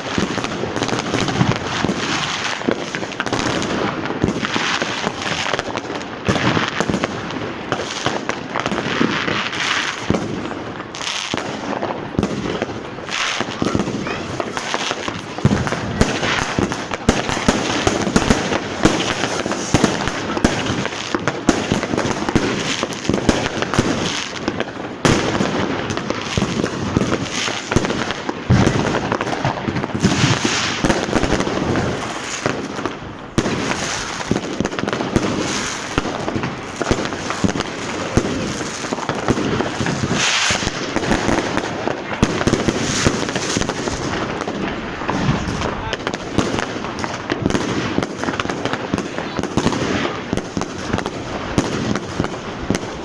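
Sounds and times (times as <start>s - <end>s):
fireworks bangs and crackling: 0.0s - 53.0s
fireworks hissing rushes: 0.0s - 53.0s.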